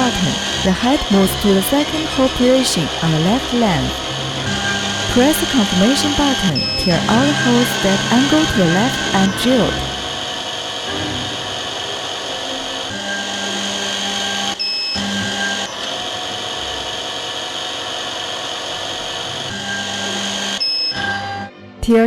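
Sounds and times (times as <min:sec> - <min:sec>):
high-speed drill motor drilling: 0:00.0 - 0:21.4
short high beep: 0:05.4 - 0:09.8.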